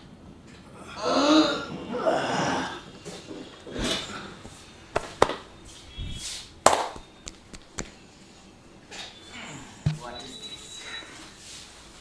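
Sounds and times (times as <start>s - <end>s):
hands slapping on body: 6.7s - 8.0s.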